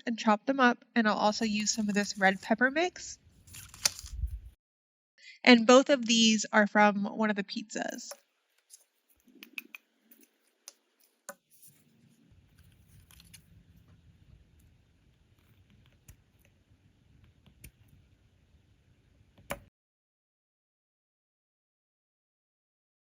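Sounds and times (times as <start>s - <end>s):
clicks and snips of cutting plastic: 3.6s - 4.2s.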